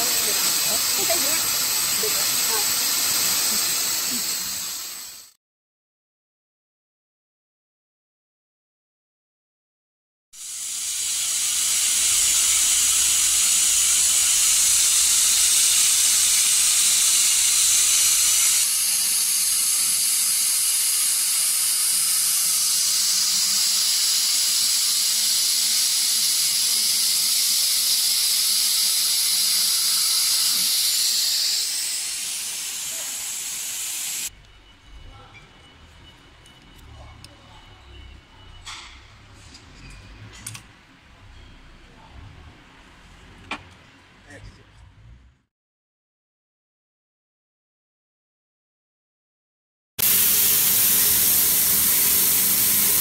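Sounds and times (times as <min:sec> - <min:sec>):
laser cutter hissing: 0:00.0 - 0:05.4, 0:10.4 - 0:34.3, 0:50.0 - 0:53.0.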